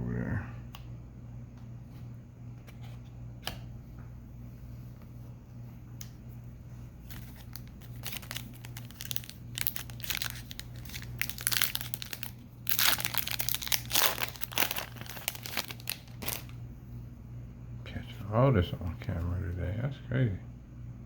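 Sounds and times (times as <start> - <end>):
foil wrapper crinkling and tearing: 7.1 - 16.6.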